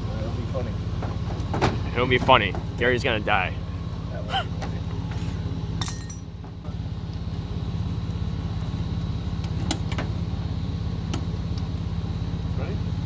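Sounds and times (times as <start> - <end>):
vehicle engine idling: 0.0 - 13.0
sharp metallic clinks: 5.8 - 6.4.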